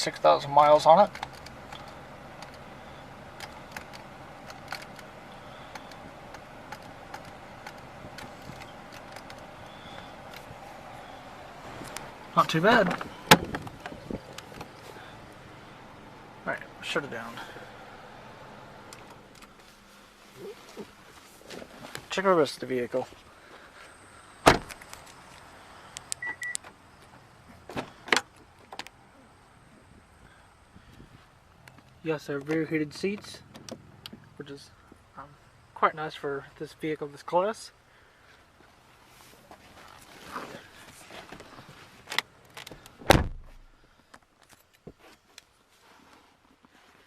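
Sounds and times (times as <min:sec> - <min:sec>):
car engine idling: 0:00.0 - 0:36.6
car door shutting: 0:03.4 - 0:15.2, 0:24.4 - 0:24.9, 0:41.3 - 0:43.7
door latch clunks: 0:12.8 - 0:14.7, 0:24.4 - 0:24.8.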